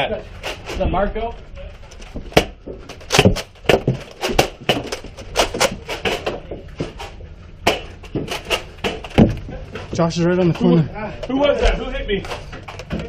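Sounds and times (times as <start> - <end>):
darts smacking walls: 7.6 - 9.5.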